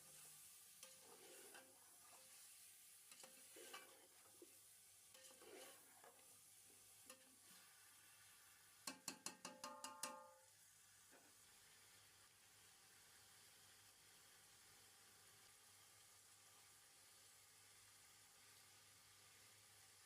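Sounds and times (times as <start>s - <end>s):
stirring in a cooking pot: 0.0s - 10.3s
faint sizzling: 0.0s - 20.0s
ringing metal taps: 8.9s - 10.4s.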